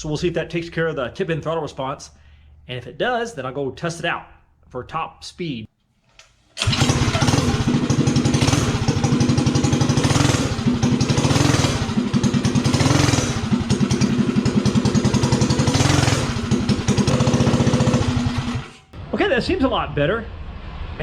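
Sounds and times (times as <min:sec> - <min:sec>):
minibike engine revving: 0:06.6 - 0:18.9.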